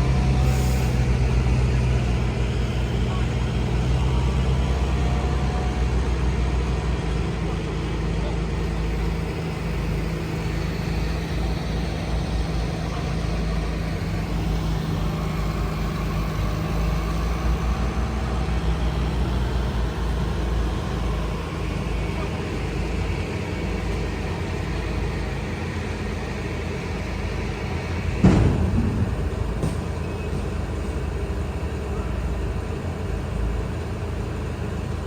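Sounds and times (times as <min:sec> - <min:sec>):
heavy engine droning: 0:00.0 - 0:35.0
sharp thump: 0:28.2 - 0:31.0.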